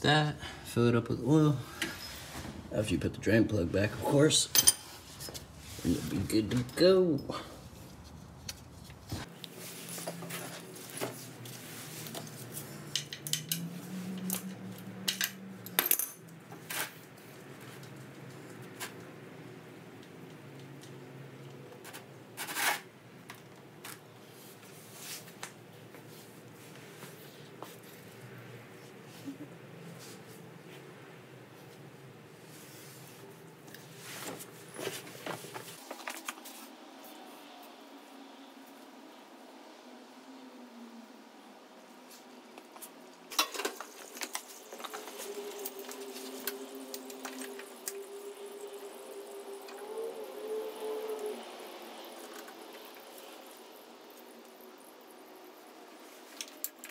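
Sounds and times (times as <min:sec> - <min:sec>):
rustling scrape: 0:04.7 - 0:06.4, 0:07.6 - 0:12.7, 0:22.4 - 0:22.9, 0:32.4 - 0:36.8.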